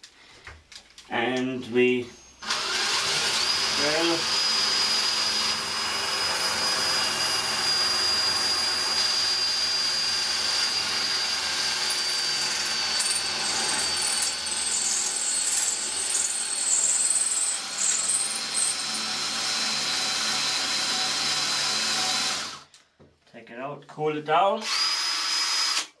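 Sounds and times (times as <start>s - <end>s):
cutter screeching on steel: 2.2s - 19.8s
power drill whining: 2.4s - 22.7s, 24.6s - 26.0s.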